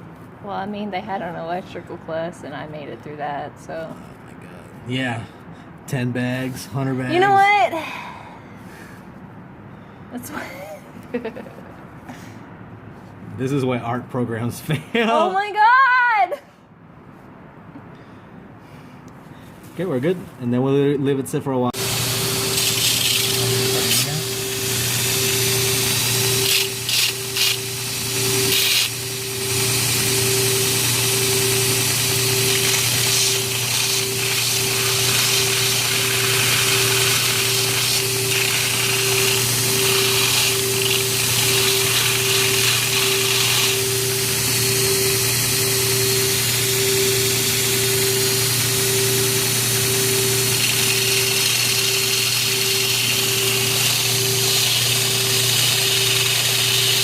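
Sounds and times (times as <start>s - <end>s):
electric power tool humming: 21.8s - 57.0s.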